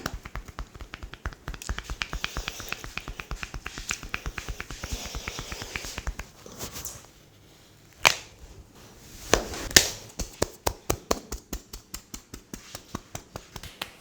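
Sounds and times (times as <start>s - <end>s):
hands cracking and tapping on skin: 0.0s - 6.4s, 9.7s - 14.0s.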